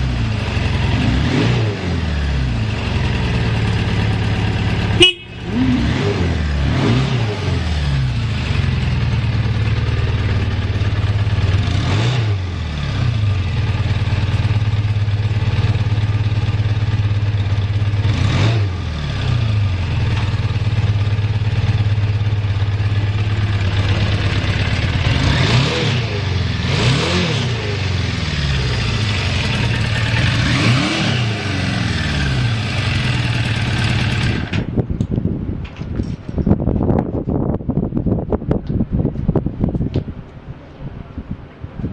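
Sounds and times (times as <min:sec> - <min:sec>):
motorcycle engine idling: 0:02.4 - 0:05.8, 0:08.1 - 0:11.7, 0:12.6 - 0:18.1, 0:19.6 - 0:25.4, 0:27.6 - 0:30.6, 0:31.4 - 0:35.0.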